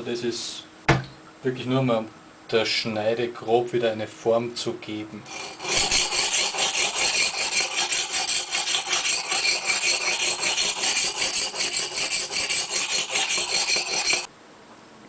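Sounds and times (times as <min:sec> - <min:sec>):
axe scraping on sharpening stone: 0:05.3 - 0:14.3.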